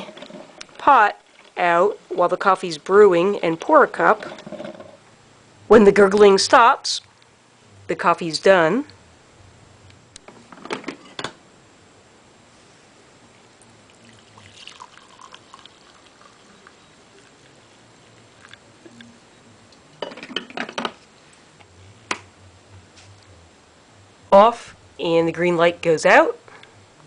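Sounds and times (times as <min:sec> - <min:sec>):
coffee maker gurgling: 0:13.8 - 0:18.6.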